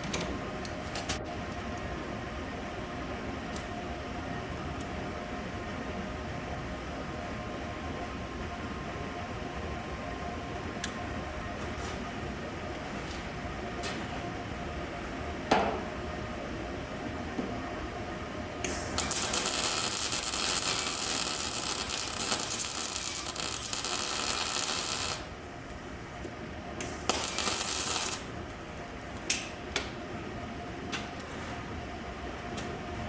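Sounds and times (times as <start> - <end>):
welder arc hissing and crackling: 18.7 - 28.5.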